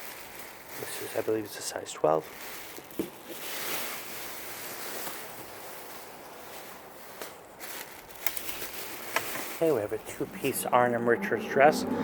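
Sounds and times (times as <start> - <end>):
dress fabric rustling: 2.1 - 9.9.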